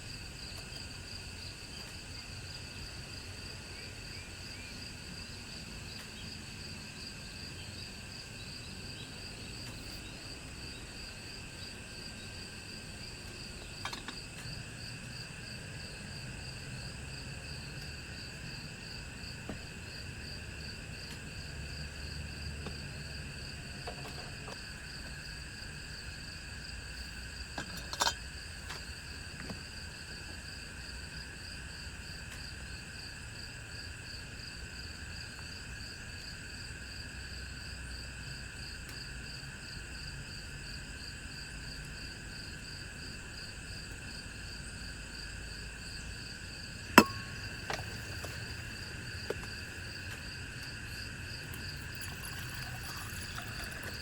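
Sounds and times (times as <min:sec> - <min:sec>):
insects chirping shrilly: 0:47.0 - 0:54.0.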